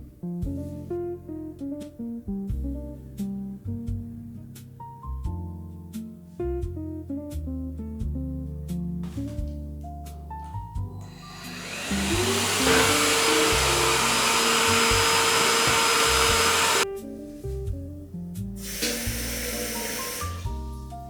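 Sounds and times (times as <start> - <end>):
soft background music: 0.0 - 21.0
vacuum cleaner running: 11.0 - 16.8, 18.6 - 20.5.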